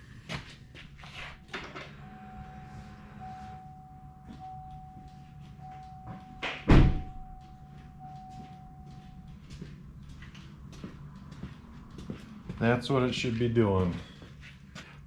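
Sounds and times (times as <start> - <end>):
steady electronic tone: 2.0 - 10.0.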